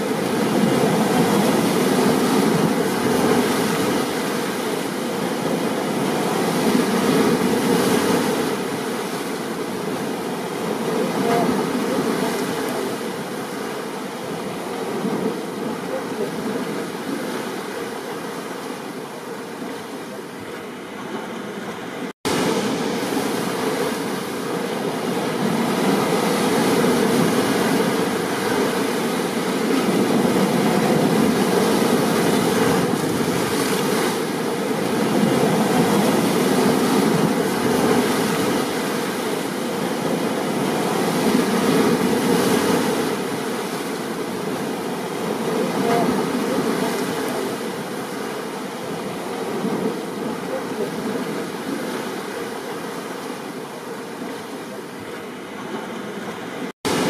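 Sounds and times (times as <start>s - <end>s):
surf roaring: 0.0s - 57.0s
rain: 22.0s - 55.3s.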